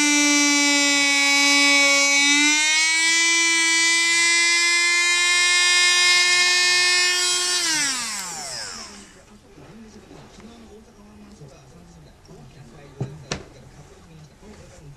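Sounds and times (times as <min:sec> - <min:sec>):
electric drill whining: 0:00.0 - 0:09.3.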